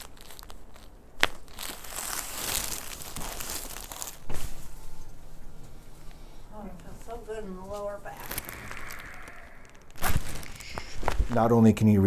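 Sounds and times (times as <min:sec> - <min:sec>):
body rustling: 0:00.0 - 0:11.7
heavy thump with crunching: 0:03.3 - 0:06.5.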